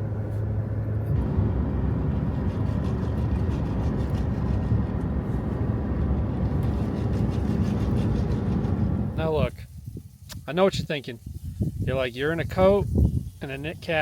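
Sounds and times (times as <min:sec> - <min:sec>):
engine hum: 0:00.0 - 0:09.4
road noise inside vehicle: 0:00.0 - 0:09.4.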